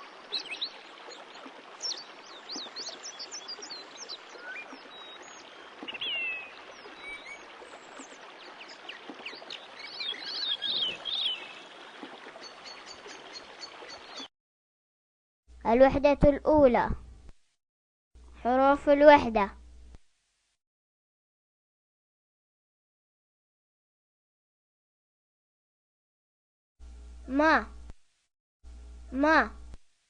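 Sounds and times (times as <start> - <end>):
birds chirping and calling: 1.8 - 14.3.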